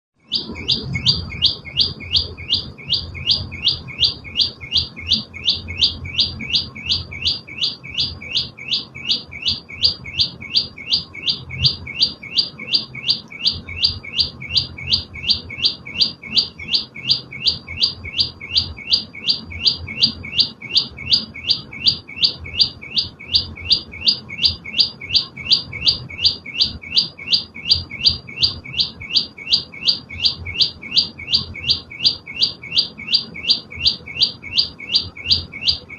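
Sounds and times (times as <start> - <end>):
songbird sharp chirps: 0.2 - 35.9.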